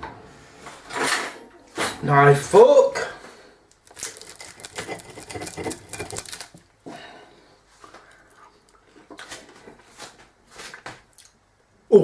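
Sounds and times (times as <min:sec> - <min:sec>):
knife and fork scraping a plate: 0:04.4 - 0:06.4.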